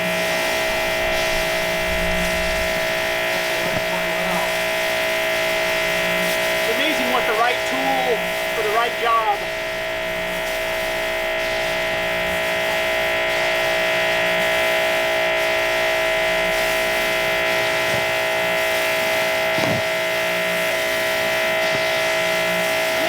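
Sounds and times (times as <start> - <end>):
pressure washer motor whine: 0.0 - 23.0
water spray hiss: 0.0 - 23.0.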